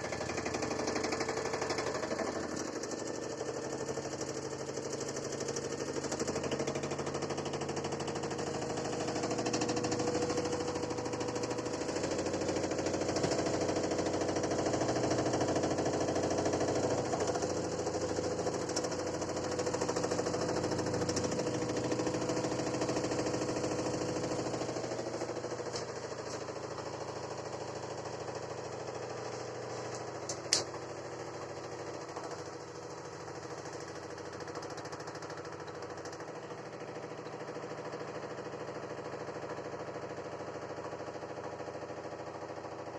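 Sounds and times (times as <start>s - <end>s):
washing machine spinning: 0.0s - 42.9s
fast rattling knock: 9.1s - 14.0s
sharp click: 30.0s - 30.8s.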